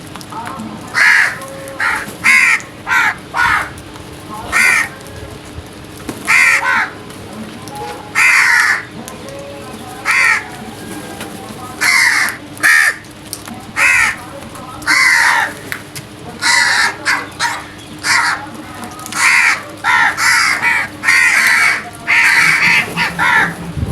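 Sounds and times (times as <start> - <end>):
crows cawing: 0.9 - 5.1, 6.2 - 7.0, 8.0 - 9.0, 10.0 - 10.6, 11.7 - 13.2, 13.8 - 23.7.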